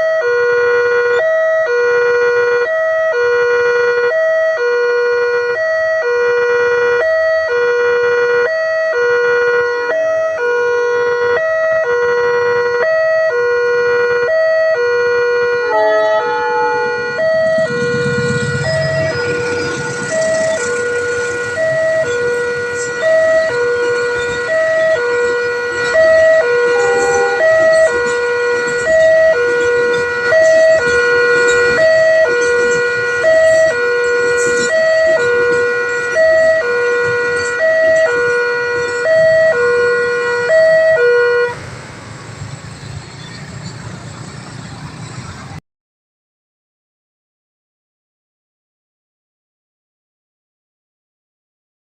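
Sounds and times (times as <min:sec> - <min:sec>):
level-crossing two-tone alarm: 0:00.0 - 0:41.6
rumbling rushing noise: 0:16.1 - 0:37.4.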